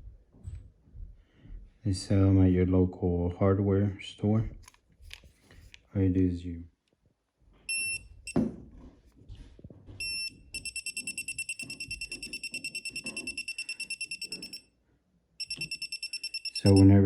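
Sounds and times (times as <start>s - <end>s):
voltage tester beeping: 7.7s - 8.4s, 10.0s - 14.6s, 15.4s - 17.0s.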